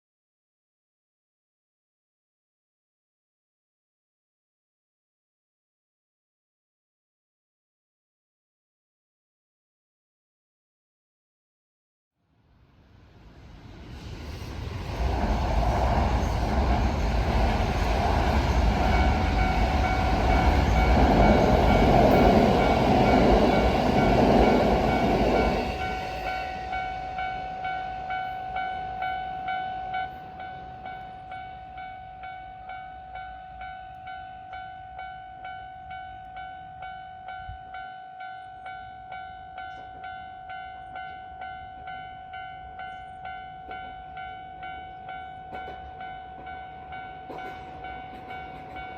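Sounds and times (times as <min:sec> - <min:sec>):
train rumbling past: 0:12.4 - 0:48.9
level-crossing warning bell: 0:17.0 - 0:48.9.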